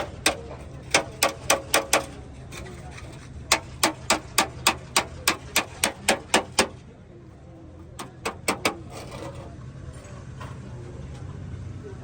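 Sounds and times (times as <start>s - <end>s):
hammer striking sheet metal: 0.0s - 2.2s, 3.5s - 6.8s, 8.0s - 9.2s.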